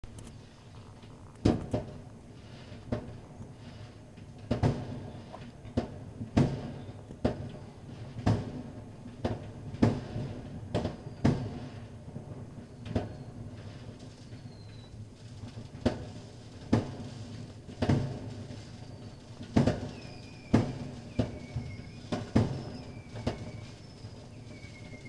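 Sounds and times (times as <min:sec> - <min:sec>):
steady low hum: 0:00.0 - 0:09.2
sharp knocks and bangs: 0:04.4 - 0:11.6, 0:15.6 - 0:18.6, 0:19.2 - 0:24.3.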